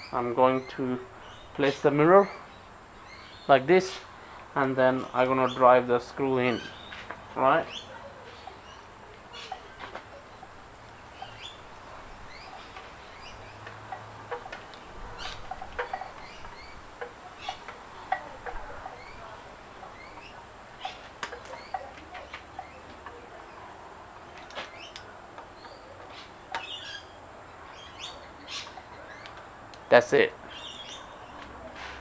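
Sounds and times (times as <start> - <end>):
small birds chirping: 6.4 - 13.7, 24.4 - 31.4
clicks and knocks of parts: 21.2 - 22.0.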